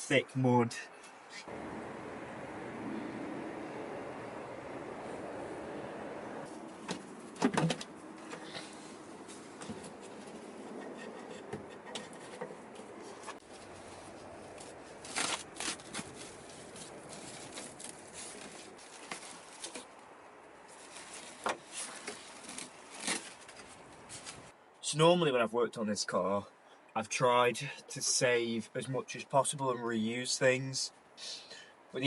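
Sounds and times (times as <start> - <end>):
scraping and rustling: 6.5 - 20.0, 20.6 - 24.5.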